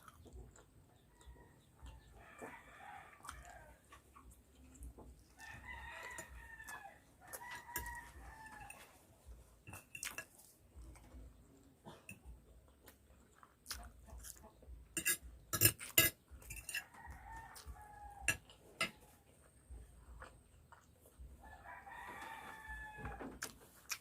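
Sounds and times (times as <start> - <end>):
rooster crowing faintly: 5.4 - 9.0, 16.7 - 19.2.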